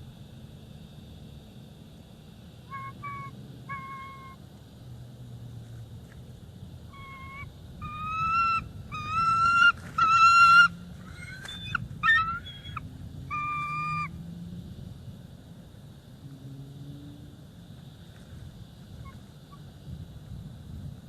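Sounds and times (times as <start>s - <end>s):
eagle piping calls: 2.7s - 4.4s, 6.9s - 14.1s.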